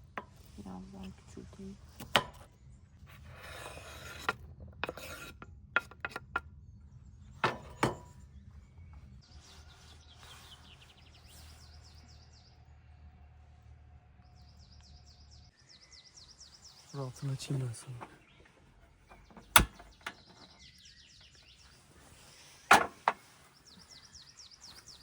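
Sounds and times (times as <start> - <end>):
birds chirping: 6.1 - 13.5, 14.2 - 25.0.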